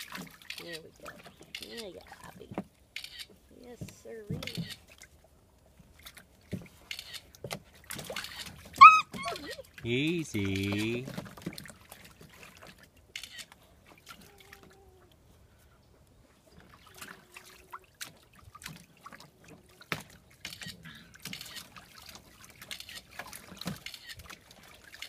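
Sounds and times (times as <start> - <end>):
puppies splashing in water: 0.0 - 15.5, 16.2 - 25.0.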